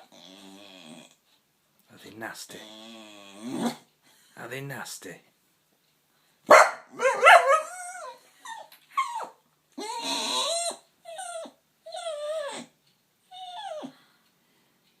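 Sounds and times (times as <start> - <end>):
dog whining and grumbling: 0.0 - 1.2, 2.5 - 3.9, 7.0 - 14.0.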